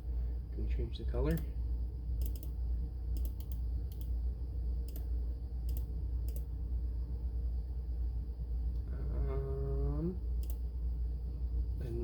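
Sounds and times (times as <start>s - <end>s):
steady low hum: 0.0s - 12.0s
computer mouse clicking: 2.2s - 2.6s, 3.2s - 4.2s, 4.8s - 6.5s, 10.4s - 10.6s.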